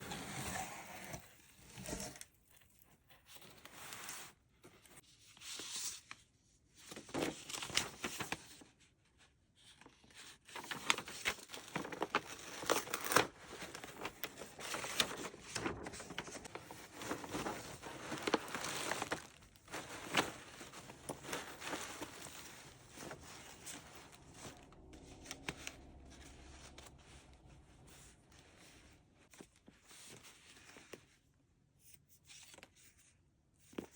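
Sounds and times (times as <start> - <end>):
packaging crinkling and tearing: 10.5 - 27.4.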